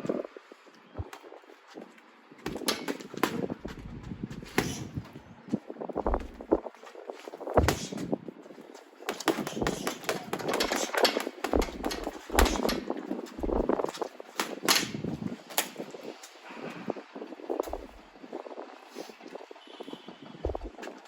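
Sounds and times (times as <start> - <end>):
boxing gloves thudding into punch bag: 2.5 - 3.6, 4.5 - 5.0, 7.6 - 8.1, 9.1 - 13.7.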